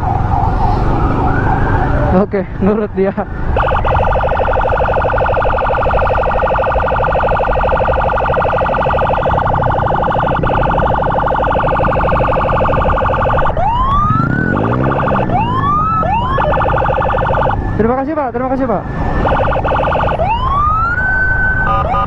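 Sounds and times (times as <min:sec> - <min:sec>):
electronic siren wailing: 0:00.0 - 0:02.2, 0:03.5 - 0:22.0
motorcycle engine: 0:03.6 - 0:17.8.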